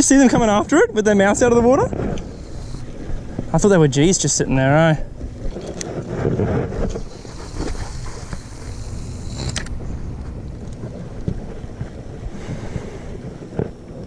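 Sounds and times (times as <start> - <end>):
water around boat: 0.0 - 14.0
wind on microphone: 0.0 - 14.0.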